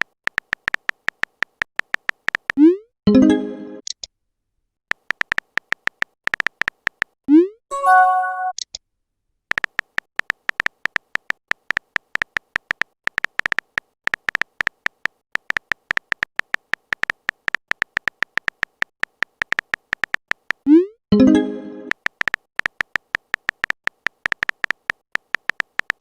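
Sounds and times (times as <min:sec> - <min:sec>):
phone keyboard typing clicks: 0:00.0 - 0:02.6, 0:04.9 - 0:07.2, 0:09.5 - 0:20.6, 0:21.8 - 0:26.0
short chime: 0:07.7 - 0:08.5.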